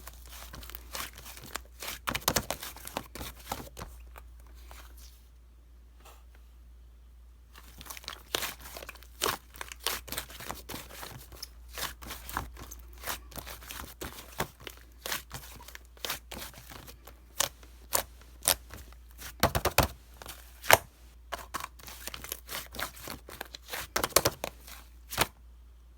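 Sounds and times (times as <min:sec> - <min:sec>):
crinkling and tearing crackles: 0:00.0 - 0:05.2, 0:07.6 - 0:25.3.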